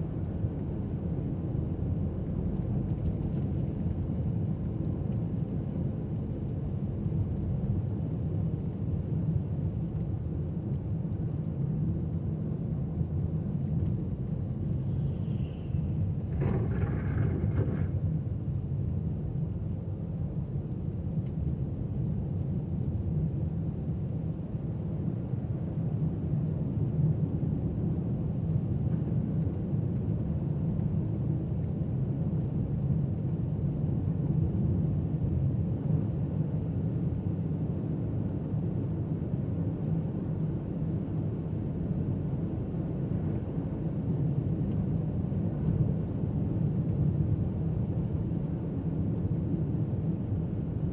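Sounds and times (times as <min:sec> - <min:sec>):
car driving on snowy road: 0:13.1 - 0:20.6.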